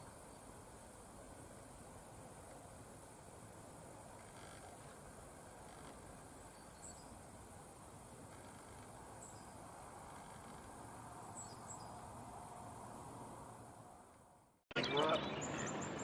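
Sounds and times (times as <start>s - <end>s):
low background hiss: 0.0s - 16.0s.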